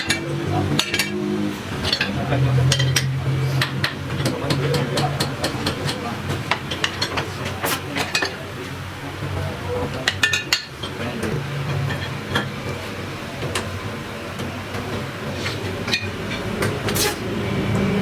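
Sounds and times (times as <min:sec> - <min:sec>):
low machine hum: 0:11.0 - 0:18.0.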